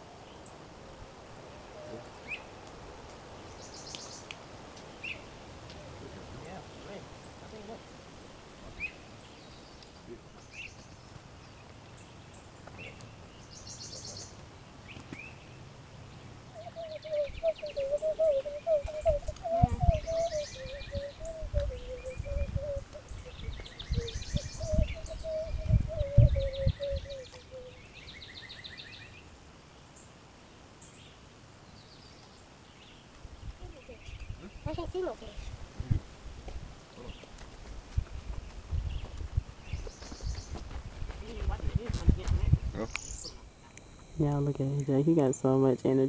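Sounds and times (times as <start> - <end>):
birds trilling and chirping: 3.4 - 29.3, 38.1 - 41.6
wavering steady hum: 16.6 - 27.7.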